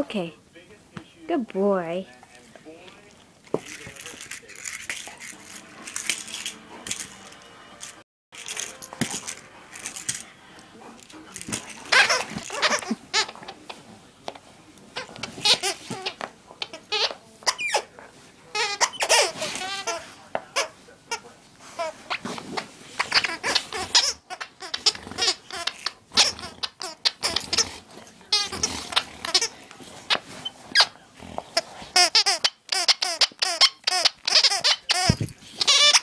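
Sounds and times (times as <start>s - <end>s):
squeaky dog toy squeaking: 11.8s - 13.4s, 15.0s - 17.9s, 18.5s - 20.0s, 23.0s - 27.7s, 28.3s - 29.5s, 32.0s - 36.0s.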